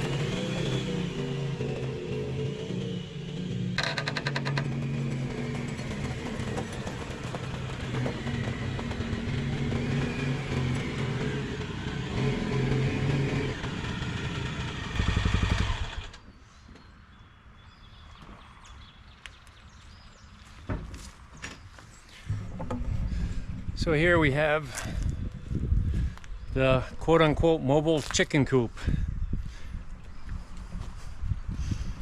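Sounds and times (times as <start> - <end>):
vehicle engine running: 0.0 - 16.2, 22.3 - 26.4.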